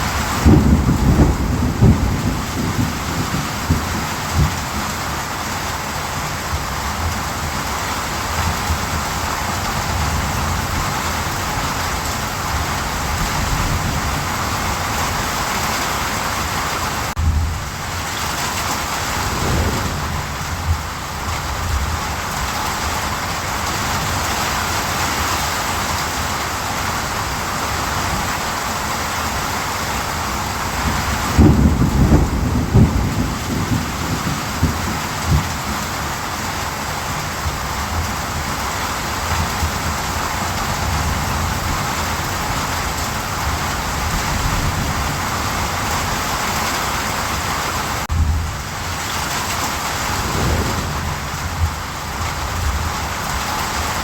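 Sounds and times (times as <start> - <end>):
low rumble of thunder: 0.0 - 5.1, 17.2 - 24.2, 30.6 - 36.0, 48.1 - 54.0
steady rainfall hissing: 0.0 - 44.6, 46.4 - 54.0.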